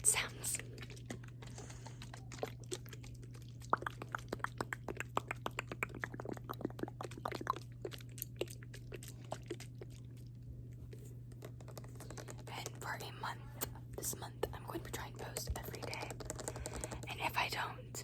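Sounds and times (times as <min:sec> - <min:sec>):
wet mouth clicks and smacks: 0:00.6 - 0:10.3, 0:13.6 - 0:13.8.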